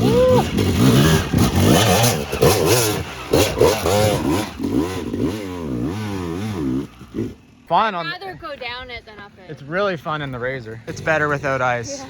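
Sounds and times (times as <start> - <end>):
dirt bike engine revving: 0.0 - 7.7, 10.7 - 12.0.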